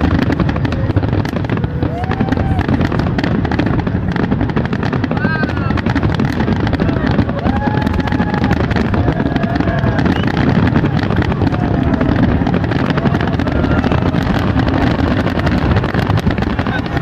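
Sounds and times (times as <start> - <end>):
fireworks barrage: 0.0 - 17.0
firework whistles: 4.5 - 17.0.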